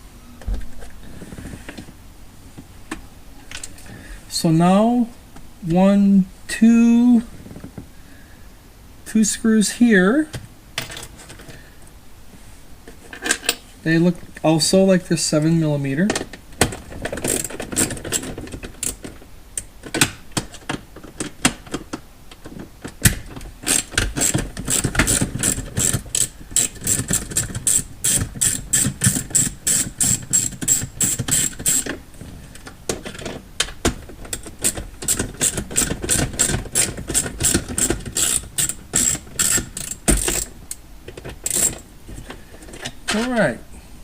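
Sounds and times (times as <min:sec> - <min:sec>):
ratchet wrench clicking: 0:23.6 - 0:32.0, 0:34.6 - 0:40.8, 0:41.4 - 0:41.8.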